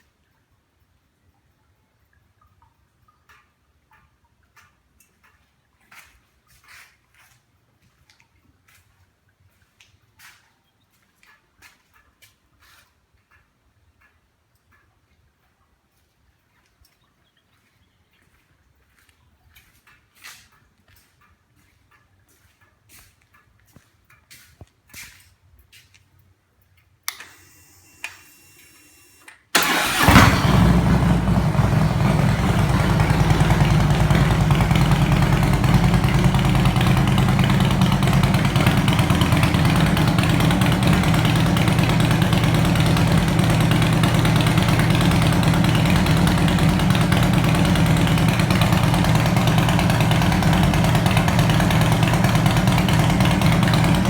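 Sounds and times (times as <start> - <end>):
motorcycle engine starting and idling: 27.1 - 54.0.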